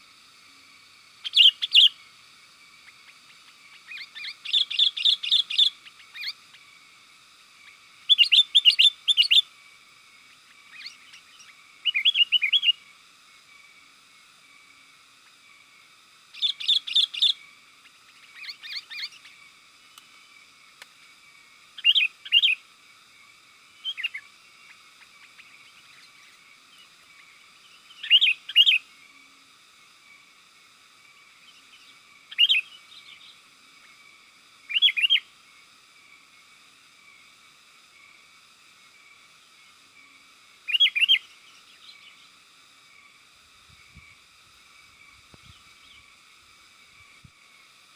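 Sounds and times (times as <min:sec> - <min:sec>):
bird bubbly chirping song: 0:10.7 - 0:12.8, 0:27.9 - 0:28.8, 0:34.7 - 0:35.3, 0:40.7 - 0:41.3.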